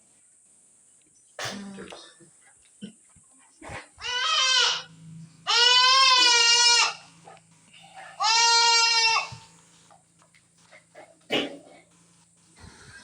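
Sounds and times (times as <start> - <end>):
goat bleating: 4.0 - 9.6.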